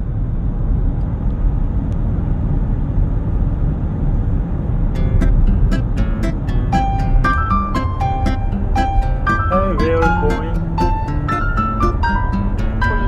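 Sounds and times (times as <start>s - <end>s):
steady low rumble: 0.0s - 13.0s
plucked harp-like music: 5.0s - 13.0s.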